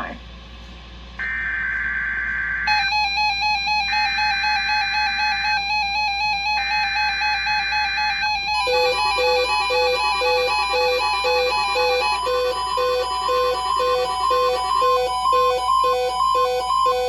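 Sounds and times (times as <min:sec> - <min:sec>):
synthesized beeping melody: 0:02.7 - 0:17.0
two-tone digital data bursts: 0:02.7 - 0:17.0.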